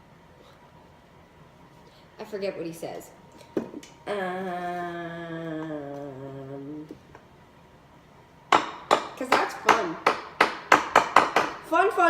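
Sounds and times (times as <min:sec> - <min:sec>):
girl humming: 0:04.0 - 0:07.0.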